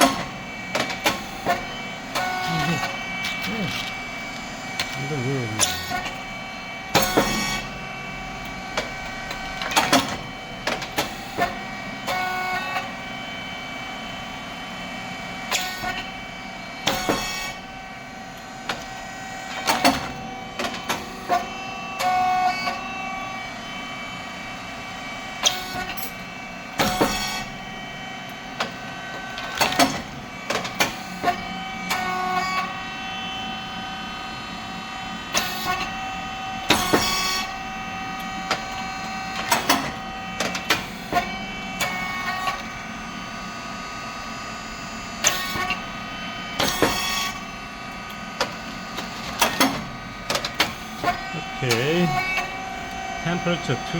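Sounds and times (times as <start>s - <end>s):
machine hum: 1.6s - 6.8s, 51.1s - 53.9s.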